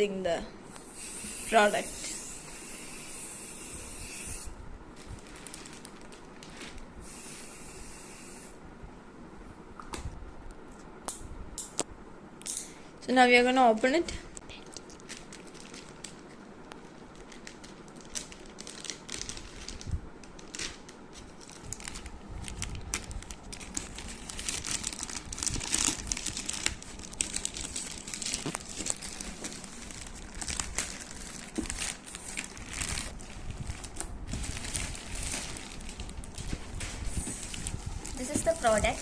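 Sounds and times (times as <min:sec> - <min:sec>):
packaging crinkling and rustling: 0:04.9 - 0:06.9, 0:14.6 - 0:39.0
packaging tearing: 0:17.1 - 0:20.8, 0:21.4 - 0:36.5.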